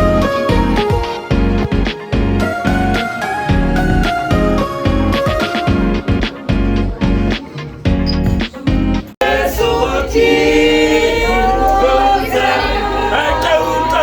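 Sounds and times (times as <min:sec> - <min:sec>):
music with a beat: 0:00.0 - 0:09.2
choir singing gospel: 0:09.2 - 0:14.0.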